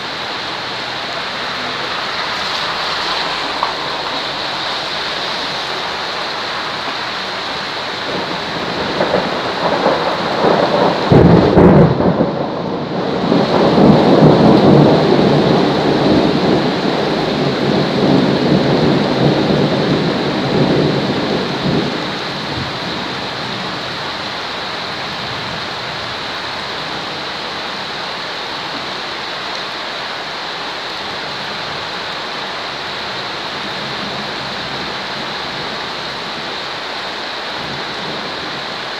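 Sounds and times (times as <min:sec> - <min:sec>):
heavy rain: 0:00.0 - 0:38.9
thunder rolling: 0:02.0 - 0:24.1.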